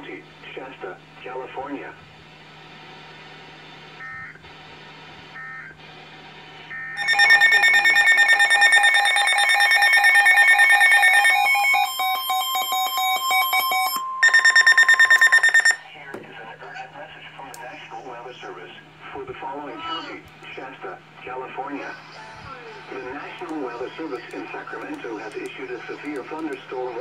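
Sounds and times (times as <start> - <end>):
buzzy electronic alarm: 6.7 - 15.8
steady warning tone: 6.7 - 15.9
fast loud beeps: 7.0 - 15.8
short beeps: 7.0 - 15.8
radio hiss: 20.4 - 27.0.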